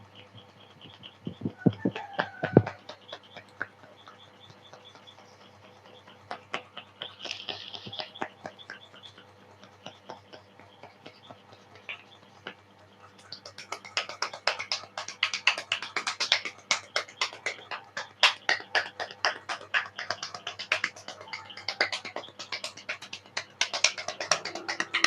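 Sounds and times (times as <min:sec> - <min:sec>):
hands slapping head in massage: 0:13.3 - 0:25.0.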